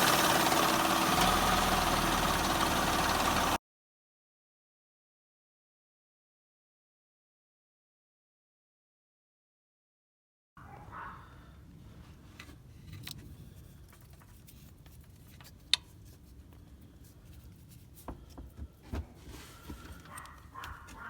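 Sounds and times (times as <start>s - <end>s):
car engine rumbling: 0.0s - 3.6s.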